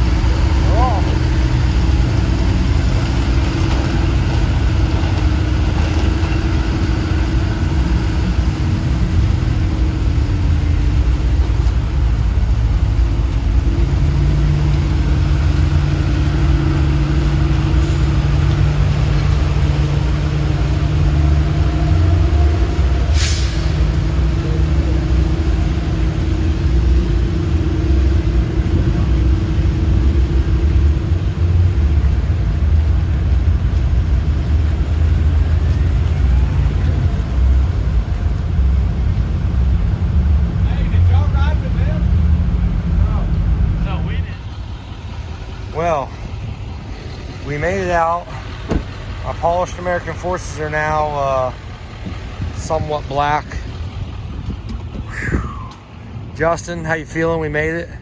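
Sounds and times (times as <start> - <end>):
heavy diesel truck engine: 0.0 - 58.0
air hiss: 23.1 - 23.8.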